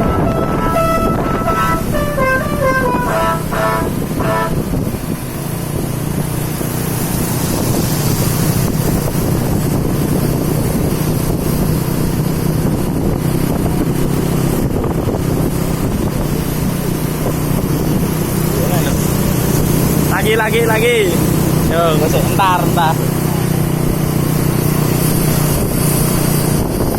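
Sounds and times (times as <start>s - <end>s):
wind noise on microphone: 0.0s - 20.6s, 23.0s - 26.9s
diesel engine running: 0.0s - 26.9s.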